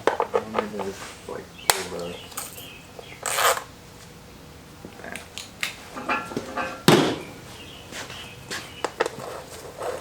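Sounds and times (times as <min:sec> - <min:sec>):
metal engine parts clanking: 0:06.0 - 0:07.3.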